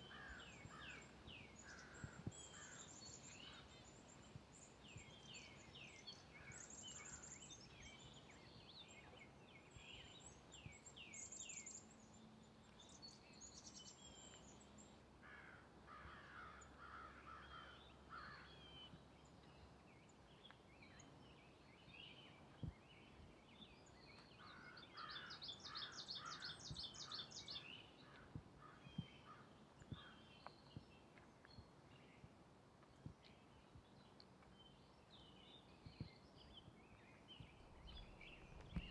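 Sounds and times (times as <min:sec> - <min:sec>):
faint songbird calls: 0:00.0 - 0:38.9
footsteps on trail: 0:37.9 - 0:38.9.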